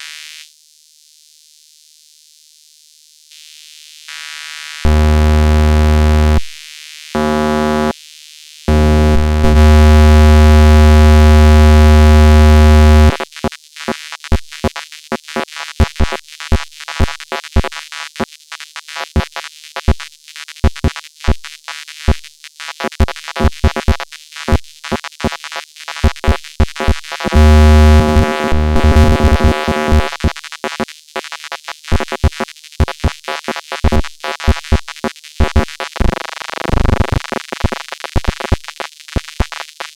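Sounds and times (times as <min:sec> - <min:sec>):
electronic blips and clicks: 0:04.9 - 0:06.5, 0:07.2 - 0:07.9, 0:08.7 - 0:13.2, 0:26.0 - 0:39.9
steady buzzing tone: 0:04.9 - 0:06.5, 0:07.2 - 0:07.9, 0:08.7 - 0:13.5, 0:22.9 - 0:39.9.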